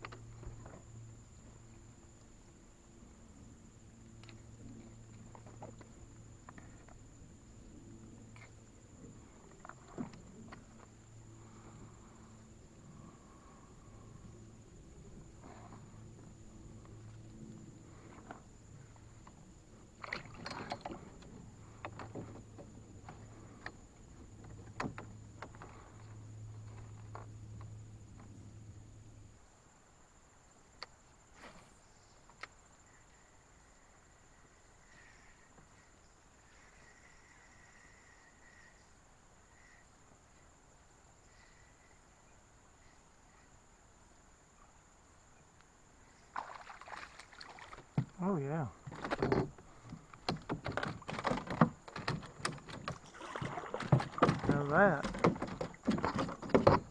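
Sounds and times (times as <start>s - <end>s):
insect trills: 0.0s - 56.9s
insects chirring: 0.0s - 56.9s
knocks against canoe hull: 47.7s - 48.2s, 48.8s - 56.9s.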